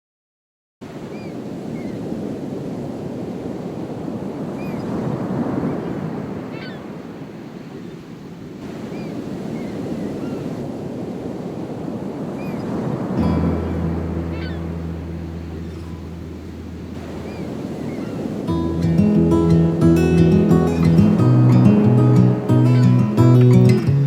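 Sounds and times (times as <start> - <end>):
ocean surf washing: 1.0 - 24.0
wind buffeting microphone: 10.7 - 24.0
short high chirps: 13.2 - 22.0.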